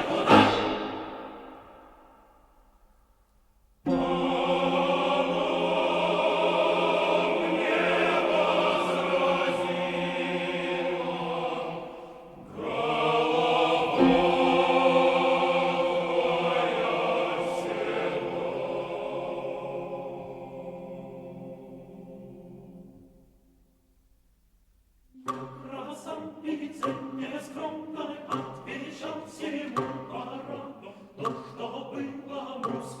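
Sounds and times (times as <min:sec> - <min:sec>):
choir singing sustained chords: 0:00.0 - 0:02.3, 0:03.9 - 0:23.6, 0:25.6 - 0:33.0.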